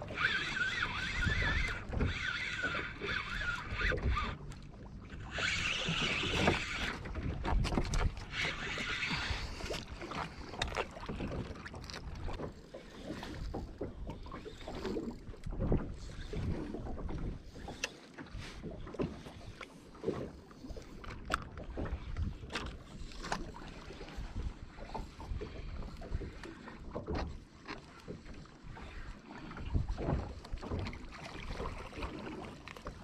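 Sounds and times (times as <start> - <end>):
wind rumble on microphone: 0.8 - 12.4, 28.7 - 32.4.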